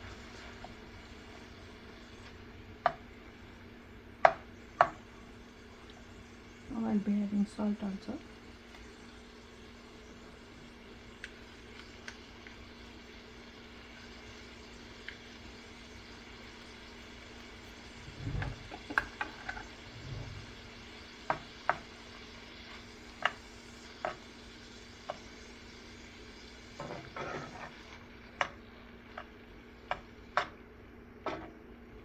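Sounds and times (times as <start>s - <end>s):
frying pan sizzling: 0.0s - 32.0s
spatula knocking against pan: 4.2s - 5.0s, 29.9s - 30.6s.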